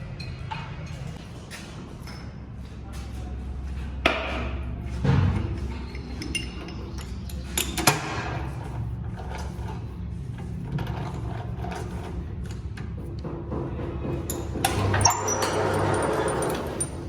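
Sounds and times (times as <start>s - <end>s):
metal tools clinking: 14.3s - 17.0s.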